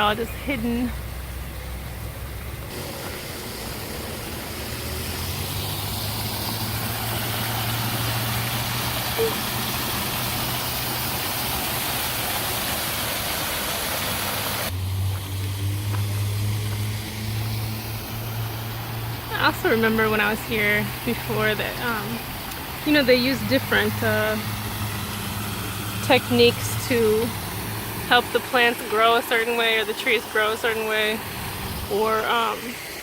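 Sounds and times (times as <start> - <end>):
water rushing: 0.0 - 33.0.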